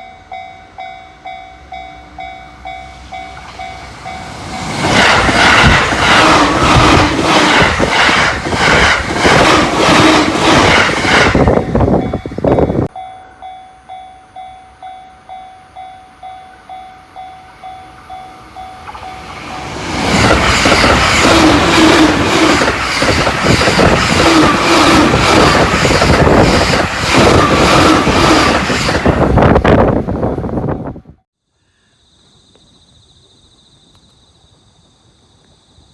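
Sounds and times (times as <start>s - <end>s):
level crossing warning bell: 0.0s - 5.0s, 11.5s - 20.0s
train passing at high speed: 0.0s - 31.2s
train wheels clattering on rails: 2.5s - 12.9s, 18.7s - 29.8s.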